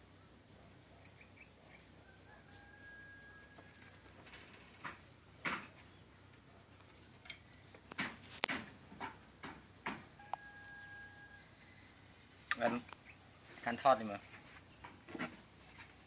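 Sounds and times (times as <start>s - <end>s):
sharp clicks and knocks: 4.2s - 5.9s, 7.2s - 10.1s.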